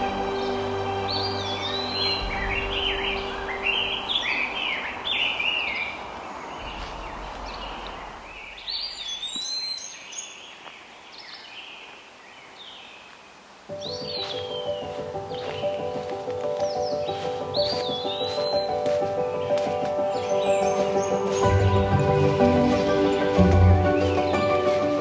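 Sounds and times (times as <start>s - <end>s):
birds singing: 0.0s - 25.0s.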